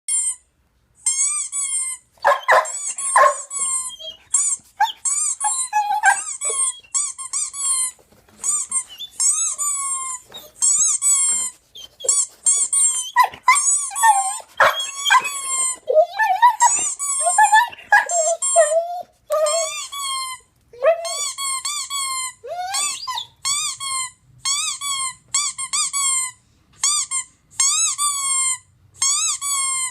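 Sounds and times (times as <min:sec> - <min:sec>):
squeaky toy squeaks: 0:00.1 - 0:29.9
dog barking: 0:02.2 - 0:03.5, 0:06.0 - 0:06.3, 0:14.6 - 0:15.3.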